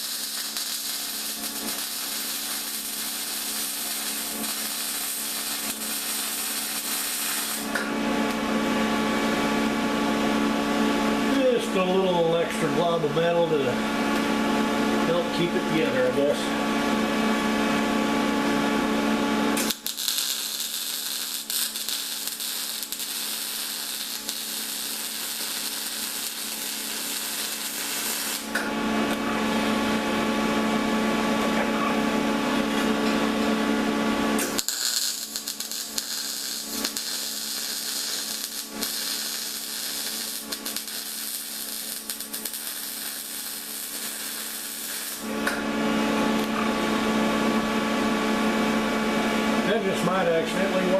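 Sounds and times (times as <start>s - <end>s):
welder arc crackling: 0.0s - 8.4s, 19.5s - 30.1s, 32.5s - 45.6s, 46.2s - 46.9s
low electrical hum: 0.0s - 50.9s.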